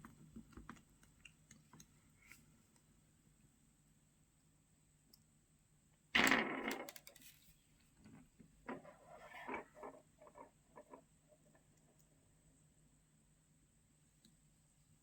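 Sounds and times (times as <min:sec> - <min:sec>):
light irregular clicks and taps: 0:00.0 - 0:02.9.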